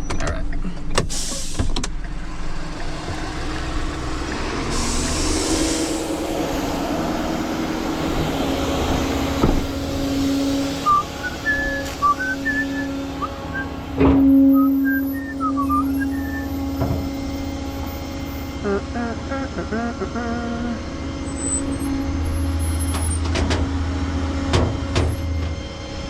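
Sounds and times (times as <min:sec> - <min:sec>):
tow truck whine: 0:00.0 - 0:26.0
short high chirps: 0:14.4 - 0:16.7.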